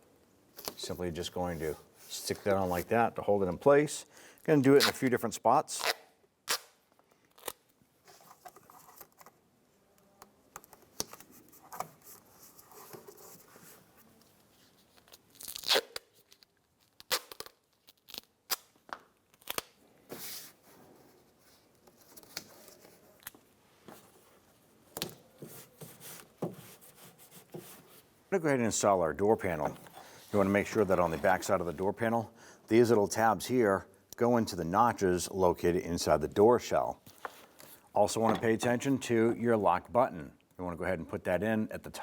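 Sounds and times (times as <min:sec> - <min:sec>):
duct tape ripping off roll: 0:05.7 - 0:07.6, 0:15.0 - 0:19.8.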